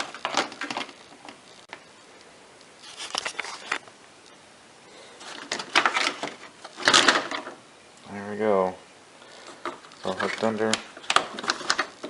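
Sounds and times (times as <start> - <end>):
plastic cover clicking and rattling: 0.0 - 1.4, 5.2 - 7.6, 9.5 - 12.0.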